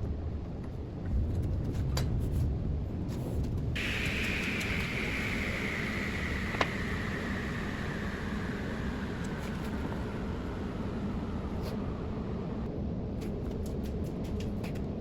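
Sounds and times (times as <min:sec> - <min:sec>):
machine hiss falling in pitch: 0:03.8 - 0:12.2.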